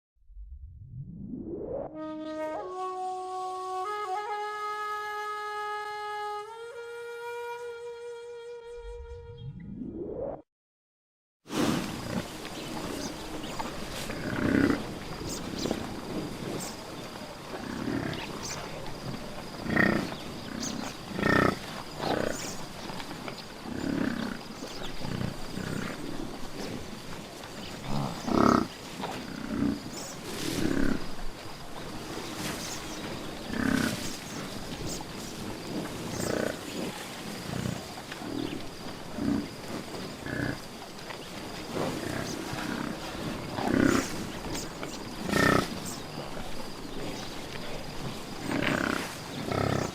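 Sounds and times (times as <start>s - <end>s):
buffalo grunting and snorting: 11.6s - 49.9s.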